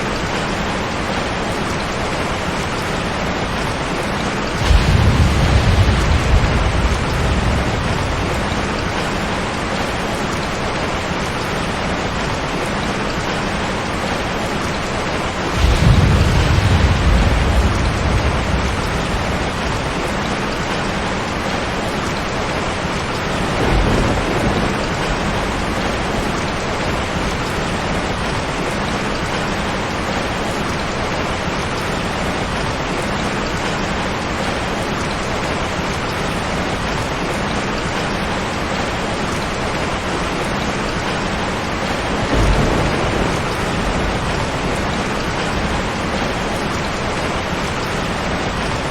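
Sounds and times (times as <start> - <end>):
heavy rain on a tin roof: 0.0 - 48.9
thunder rumbling: 3.9 - 11.8, 14.7 - 29.8, 40.0 - 48.9.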